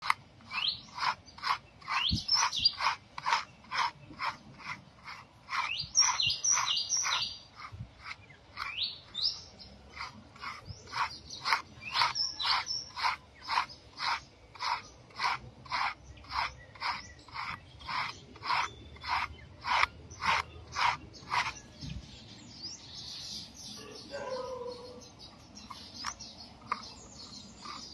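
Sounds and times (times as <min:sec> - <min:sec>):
birds chirping: 0:00.0 - 0:27.9.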